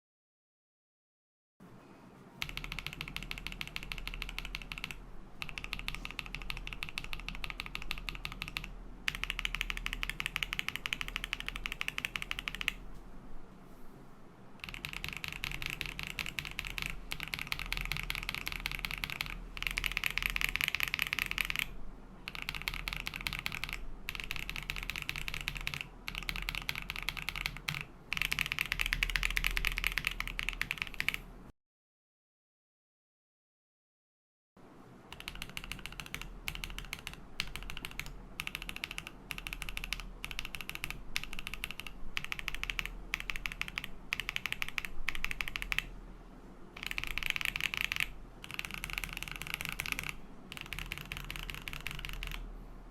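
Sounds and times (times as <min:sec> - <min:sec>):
mechanical keyboard key clacks: 0:02.4 - 0:12.8, 0:14.6 - 0:21.7, 0:22.3 - 0:31.2, 0:35.1 - 0:45.9, 0:46.8 - 0:52.4.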